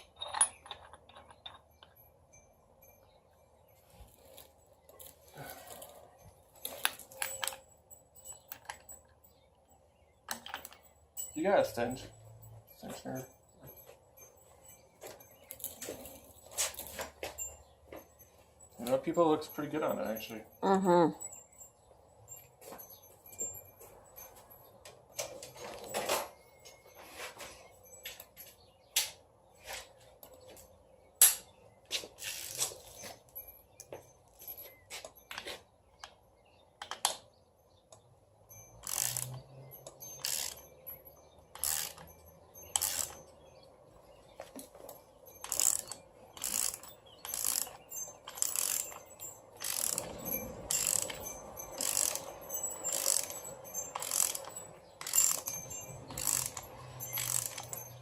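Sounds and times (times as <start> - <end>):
ratchet wrench clicking: 38.8 - 40.7, 41.5 - 43.2, 45.4 - 58.0.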